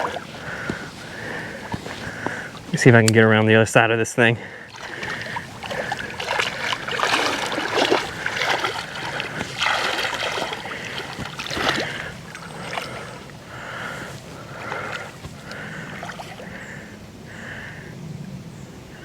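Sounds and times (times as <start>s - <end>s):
rustling through weeds: 0.0s - 3.2s, 4.7s - 16.4s
splashing in shallow water: 0.0s - 3.2s, 4.5s - 17.0s.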